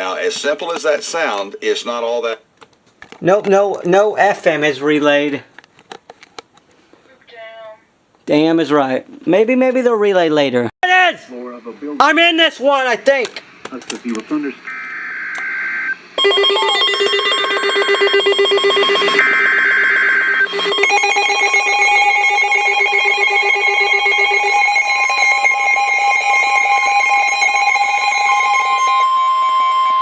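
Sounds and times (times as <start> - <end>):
rapid buzzing data bursts: 14.2 - 29.0
steady electronic alert tone: 16.2 - 29.0.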